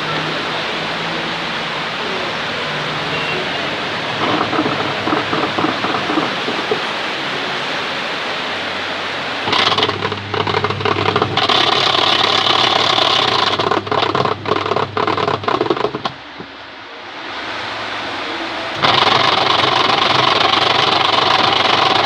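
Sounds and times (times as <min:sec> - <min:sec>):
wash motor humming: 0:00.0 - 0:22.0
washing machine rushing: 0:00.0 - 0:22.0
pulsator churning: 0:02.1 - 0:07.2, 0:09.4 - 0:16.5, 0:18.7 - 0:22.0.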